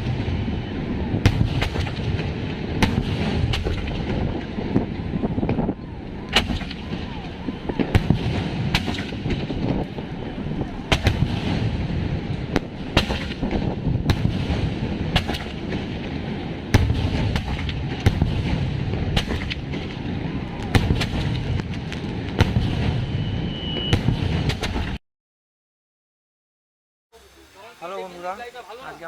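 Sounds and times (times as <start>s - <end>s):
crackling rumble: 0.0s - 25.0s
fireworks bangs: 0.0s - 25.0s
short high whistle: 23.1s - 24.0s.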